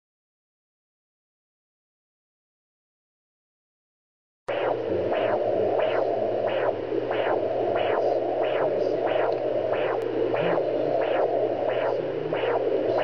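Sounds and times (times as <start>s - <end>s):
fetal heartbeat whooshes: 4.5s - 13.0s
steady hum and hiss: 4.5s - 13.0s.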